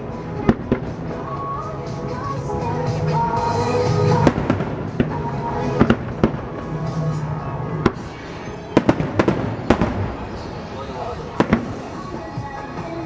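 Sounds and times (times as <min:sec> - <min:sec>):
fireworks bursting: 0:00.0 - 0:13.0
music with held notes: 0:00.0 - 0:13.0.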